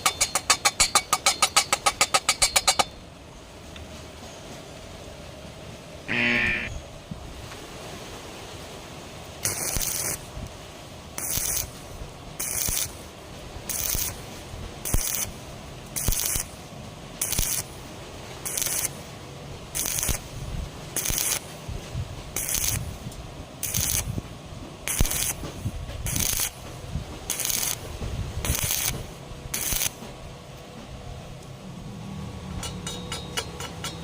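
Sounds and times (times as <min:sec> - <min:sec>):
welding arc crackling hiss: 0:06.1 - 0:06.7, 0:09.4 - 0:30.1.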